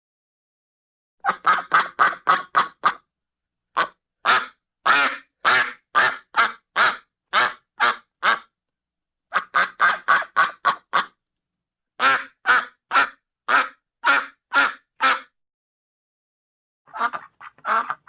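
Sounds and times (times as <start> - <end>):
duck quacking: 1.2 - 3.0, 3.8 - 8.5, 9.3 - 11.2, 12.0 - 15.4, 16.9 - 18.0.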